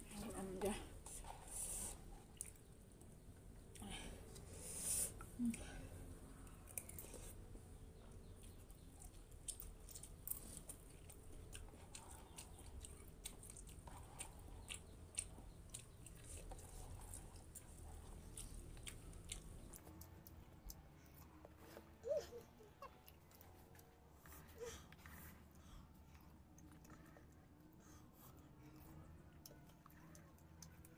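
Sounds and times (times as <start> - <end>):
person chewing noodles: 1.3 - 22.0.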